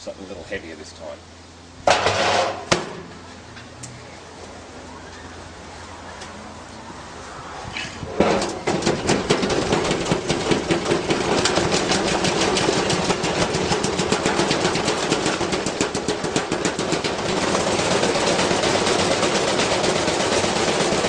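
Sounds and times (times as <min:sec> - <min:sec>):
heavy load banging in drum: 0:01.8 - 0:03.1, 0:08.1 - 0:21.0
washing machine running: 0:08.2 - 0:21.0.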